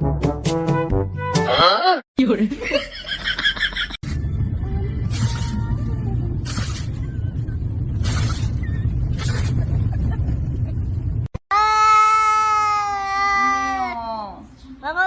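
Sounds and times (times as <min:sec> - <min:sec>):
low rumble: 0:04.0 - 0:11.3.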